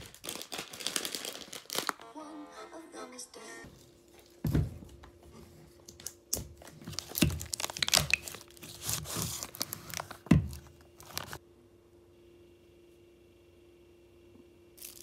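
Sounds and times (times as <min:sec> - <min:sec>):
crinkling and rustling: 0:00.0 - 0:02.0, 0:03.7 - 0:11.4.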